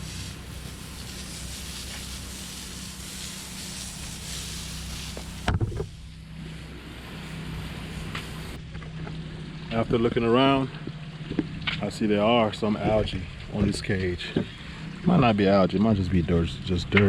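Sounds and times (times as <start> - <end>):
water spraying hiss: 0.0 - 8.6
engine humming: 0.0 - 17.0.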